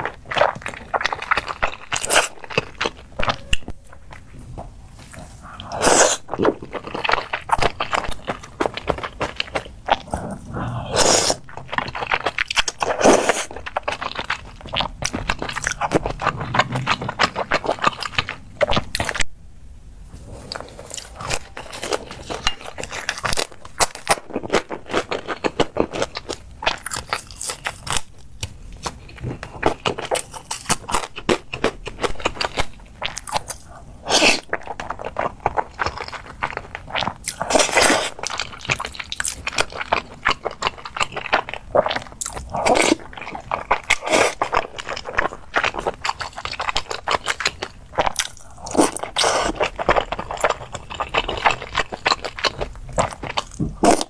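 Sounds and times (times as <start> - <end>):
chewing crisp food: 0.0 - 19.3, 20.1 - 54.0.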